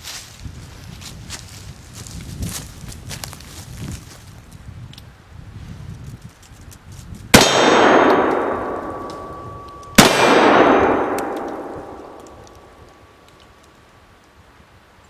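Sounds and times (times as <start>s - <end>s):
revolver shots: 7.4s - 12.9s
steel target ringing: 7.4s - 13.2s.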